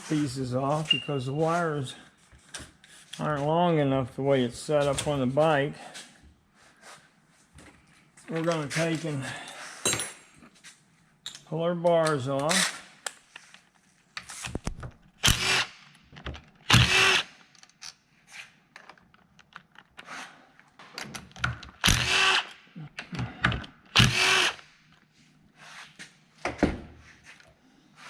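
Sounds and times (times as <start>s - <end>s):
cordless drill bursts: 15.2s - 15.8s, 16.7s - 17.3s, 21.8s - 22.5s, 24.0s - 24.6s
clicks and knocks of tool parts: 18.7s - 22.0s.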